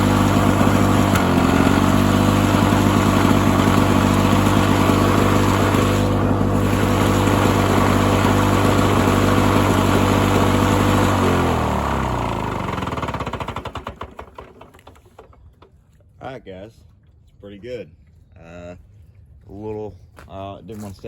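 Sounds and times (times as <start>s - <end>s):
engine winding down: 0.0s - 15.3s
lawn mower engine running: 0.0s - 15.6s.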